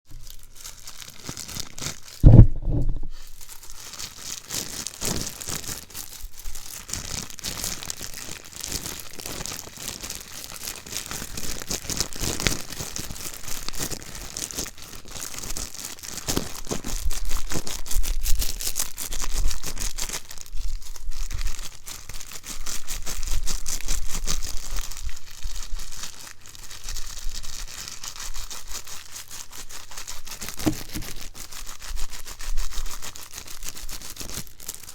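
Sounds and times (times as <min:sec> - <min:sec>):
crinkling and crumpling: 0:00.1 - 0:34.9
loud thump: 0:02.2 - 0:03.2, 0:30.6 - 0:31.1.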